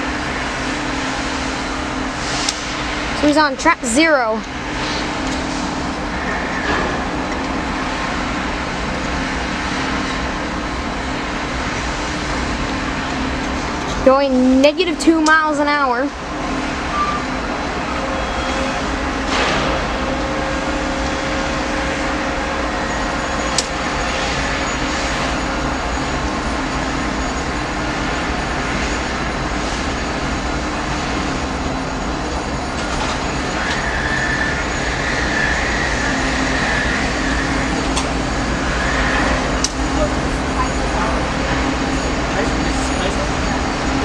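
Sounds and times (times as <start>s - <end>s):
freight train cars rumbling: 0.0s - 44.0s
faint high squeal: 16.9s - 17.3s, 17.9s - 18.9s.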